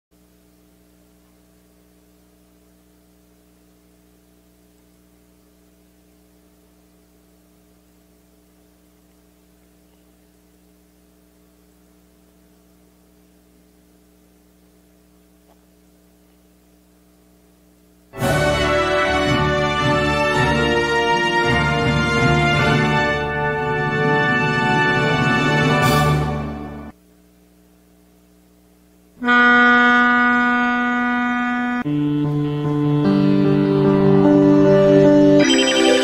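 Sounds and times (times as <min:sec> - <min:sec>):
faint electrical hum: 0:00.1 - 0:25.0, 0:25.8 - 0:36.0
loud theme music: 0:18.2 - 0:26.9, 0:35.3 - 0:36.0.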